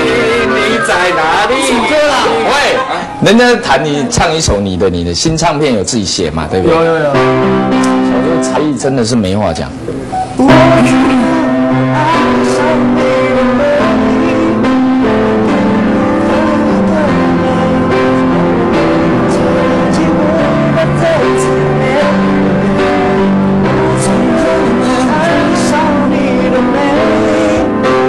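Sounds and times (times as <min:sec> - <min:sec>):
person singing: 0:00.0 - 0:03.2, 0:10.4 - 0:28.0
pop song chords: 0:00.0 - 0:03.4, 0:10.3 - 0:28.0.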